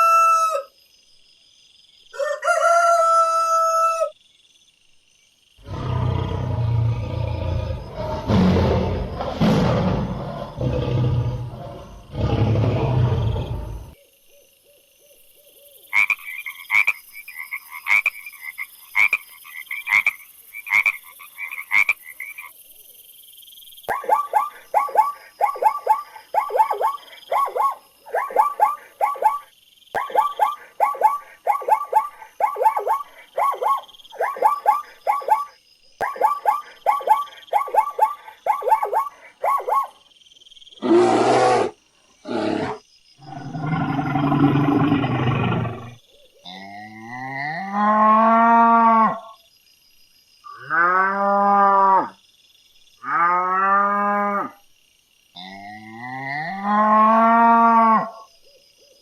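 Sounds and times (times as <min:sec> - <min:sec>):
frog croaking: 0:05.6 - 0:14.0, 0:15.8 - 0:22.6, 0:40.7 - 0:49.4, 0:55.3 - 0:58.3
rough roaring calls: 0:05.6 - 0:14.0, 0:40.8 - 0:46.0.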